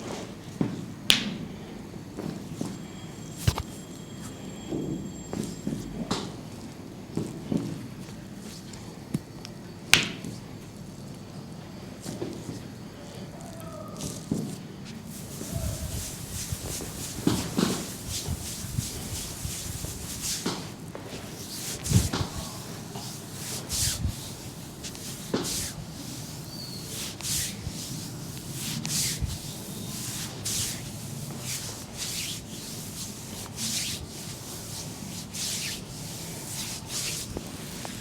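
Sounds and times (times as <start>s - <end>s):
hands rubbing skin: 3.4s - 3.7s, 14.0s - 38.0s.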